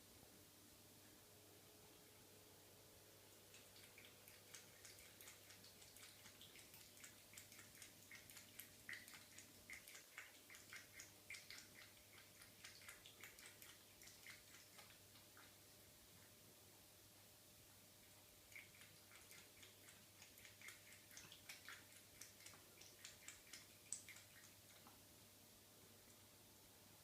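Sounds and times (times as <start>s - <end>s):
cat lapping water: 3.2s - 16.3s, 18.0s - 25.1s.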